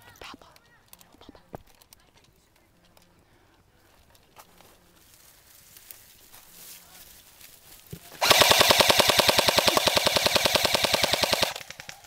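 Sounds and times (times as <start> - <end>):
airsoft gun automatic burst: 8.2 - 12.0.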